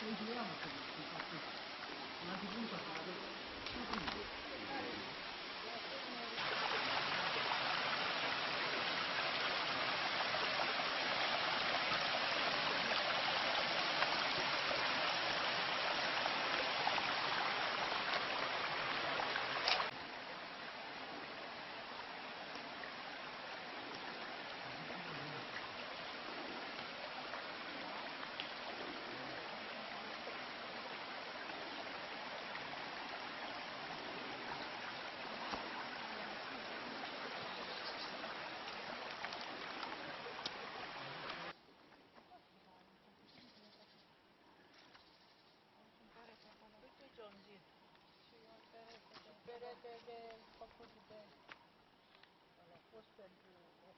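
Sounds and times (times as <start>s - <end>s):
stream rushing over rocks: 0.0s - 41.6s.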